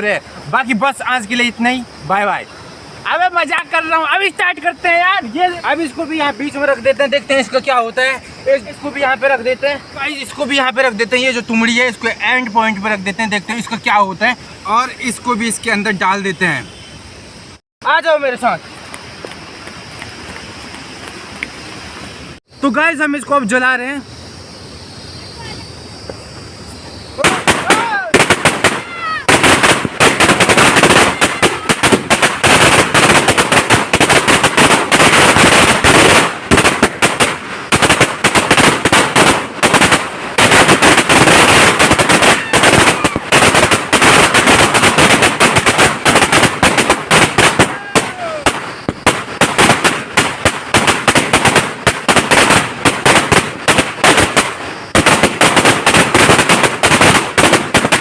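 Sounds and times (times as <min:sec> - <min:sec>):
firecracker string bangs: 0:27.2 - 0:58.0.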